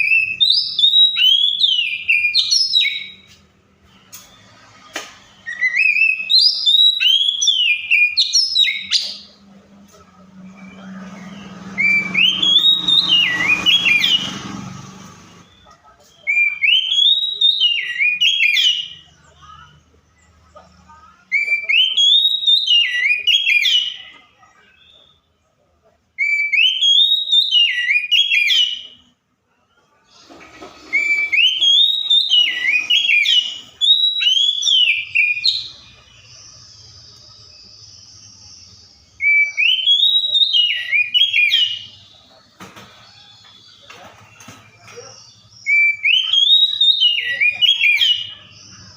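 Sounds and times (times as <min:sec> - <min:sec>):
bird whistling song: 0:00.0 - 0:04.6, 0:05.3 - 0:09.4, 0:10.6 - 0:14.4, 0:15.4 - 0:19.1, 0:21.3 - 0:24.1, 0:26.2 - 0:29.0, 0:30.8 - 0:42.4, 0:43.0 - 0:48.9.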